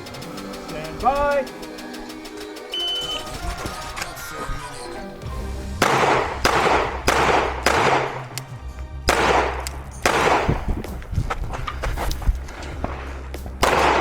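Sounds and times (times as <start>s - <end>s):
background music: 0.0s - 14.0s
pistol shots: 5.8s - 8.4s, 9.1s - 10.7s, 13.6s - 14.0s.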